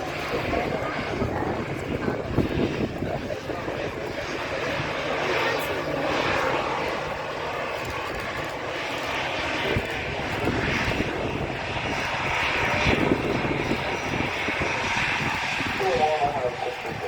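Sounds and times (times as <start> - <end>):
airliner engines rushing: 0.0 - 17.0.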